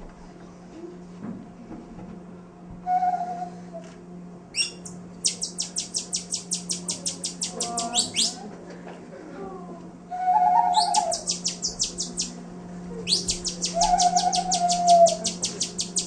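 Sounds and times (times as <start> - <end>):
steady low hum: 3.6 - 16.0
high bird-like chirps: 4.6 - 8.4, 10.7 - 12.4, 13.1 - 16.0.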